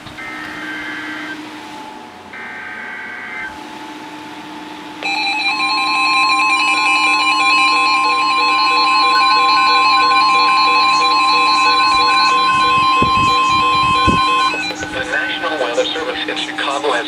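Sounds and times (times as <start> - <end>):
steady warning alarm tone: 0.0 - 17.0
data burst screeches: 5.0 - 17.0
pulsing beeps: 5.0 - 17.0.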